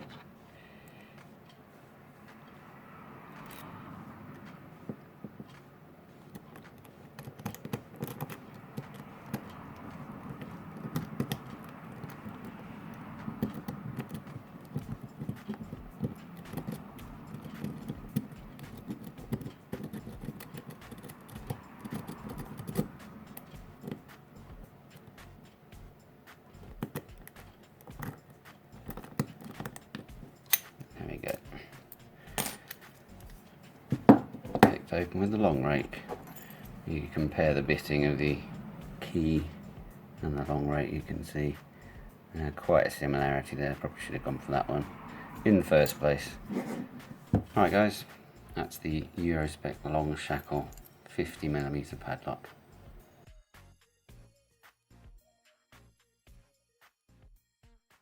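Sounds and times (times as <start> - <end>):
lock pick clicking in padlock: 6.4 - 12.6, 13.4 - 24.0, 26.7 - 31.0.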